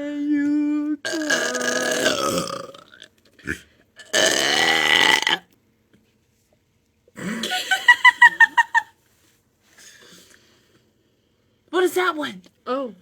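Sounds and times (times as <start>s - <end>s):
long low belch: 1.1s - 5.4s.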